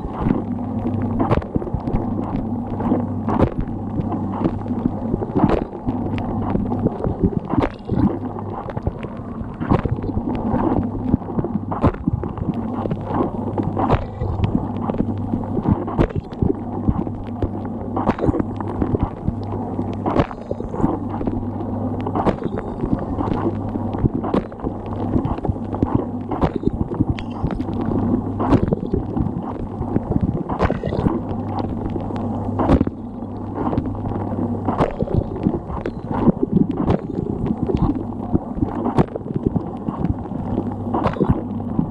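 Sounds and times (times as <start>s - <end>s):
churning gurgling water: 0.0s - 41.9s
sharp knocks and splashes: 9.6s - 19.4s, 20.0s - 21.4s, 22.1s - 27.6s, 30.4s - 31.7s.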